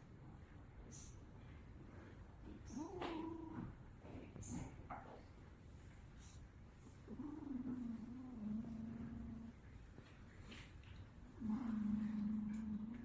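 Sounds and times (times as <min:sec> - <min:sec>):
cat snoring: 0:07.1 - 0:09.5, 0:11.4 - 0:13.0.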